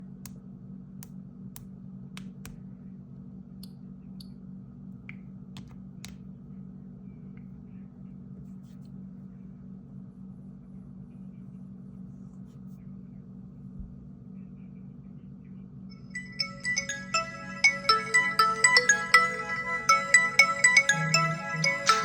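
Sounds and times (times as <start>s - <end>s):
steady low hum: 0.0s - 22.0s
sharp clicks and taps: 5.1s - 6.2s.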